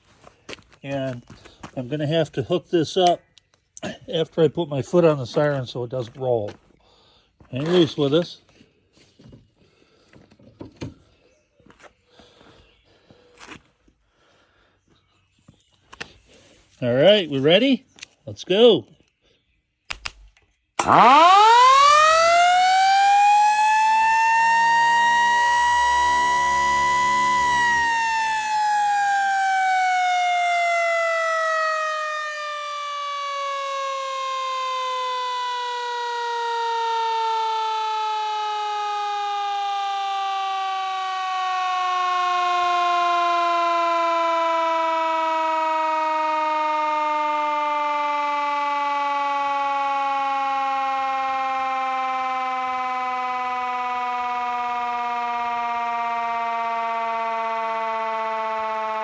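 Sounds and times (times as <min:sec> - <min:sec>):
mechanical siren winding down: 0:20.8 - 0:59.0.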